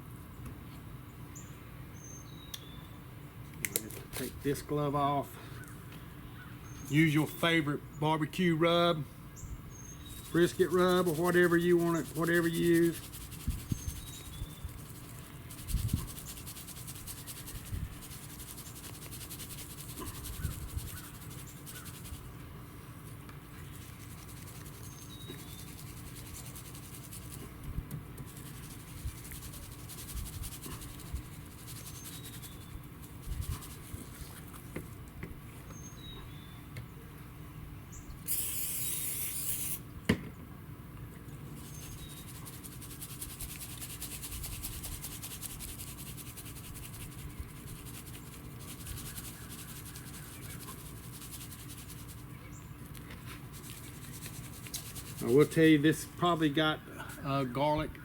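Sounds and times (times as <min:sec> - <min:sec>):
hand rubbing meat: 0:10.0 - 0:27.6, 0:28.2 - 0:34.9, 0:41.5 - 0:57.3
short hiss: 0:38.2 - 0:39.8.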